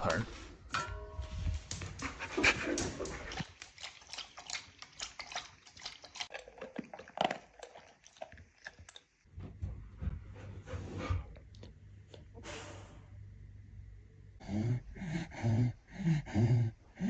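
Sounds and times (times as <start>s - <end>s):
bowl knocking: 0.7s - 1.8s
dog lapping water: 2.3s - 9.2s.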